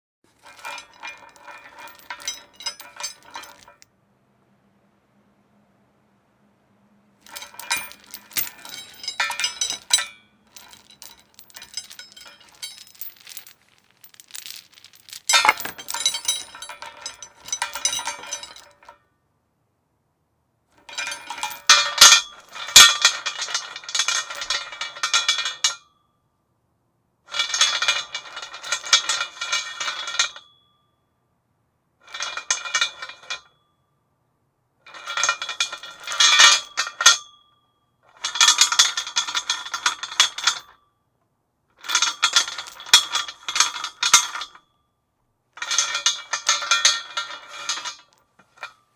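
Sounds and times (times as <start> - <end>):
metal chain rattling against post: 0.4 - 3.8, 7.2 - 19.0, 20.9 - 25.6, 45.6 - 48.8.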